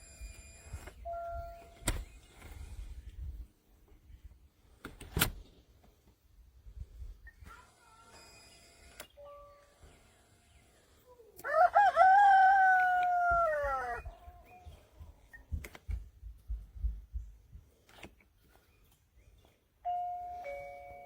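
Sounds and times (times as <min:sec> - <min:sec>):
rooster crowing: 0:11.4 - 0:14.1
two-note doorbell chime: 0:19.8 - 0:21.0.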